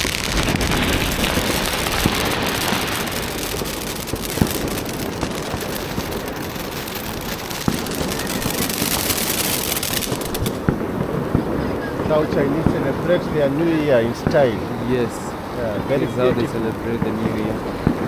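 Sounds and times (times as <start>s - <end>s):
sharp pops: 0.0s - 11.2s
firecrackers crackling: 0.0s - 18.0s.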